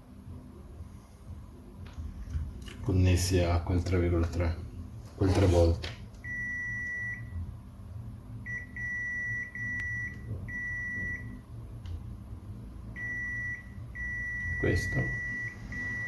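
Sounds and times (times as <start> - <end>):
multimeter continuity beep: 6.2 - 7.4, 8.4 - 11.5, 12.9 - 16.0.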